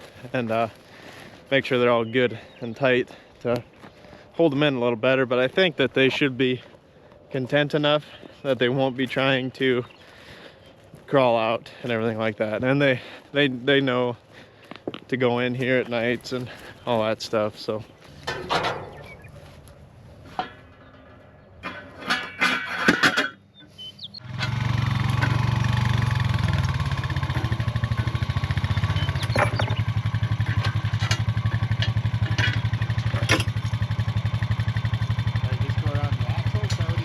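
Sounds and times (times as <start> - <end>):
knocks and clatters: 18.2 - 19.2, 20.2 - 23.4, 24.3 - 25.6, 26.6 - 34.0
engine running with fast pulse: 24.0 - 37.0.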